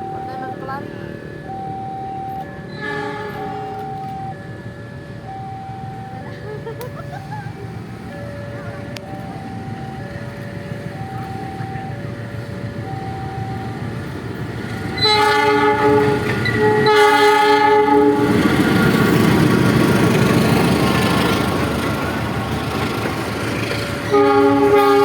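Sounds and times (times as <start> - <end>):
train rumble and rail noise: 0.0 - 25.0
locomotive air horn blasts: 2.7 - 3.9, 14.9 - 18.4, 24.1 - 25.0.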